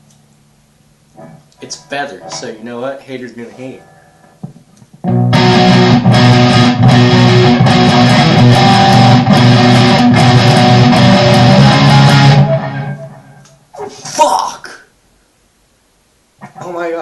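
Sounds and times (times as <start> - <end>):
electric guitar chords strummed: 1.2 - 3.0, 3.8 - 13.6.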